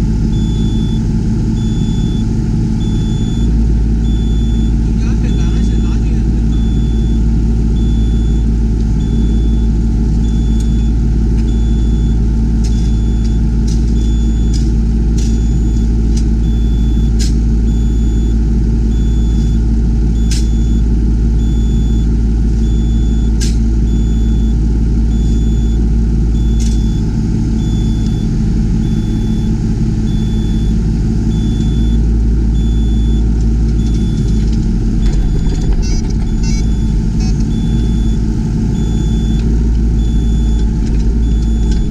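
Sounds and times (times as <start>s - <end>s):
diesel engine running: 0.0s - 41.9s
high repeating beep: 0.4s - 1.0s, 1.6s - 10.9s, 23.9s - 25.8s, 27.6s - 32.0s, 32.6s - 33.2s, 33.8s - 41.9s.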